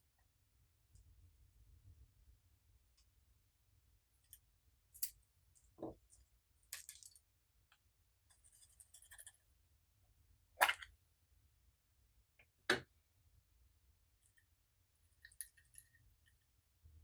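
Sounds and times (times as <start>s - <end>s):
small objects clicking and clinking: 6.7s - 7.2s.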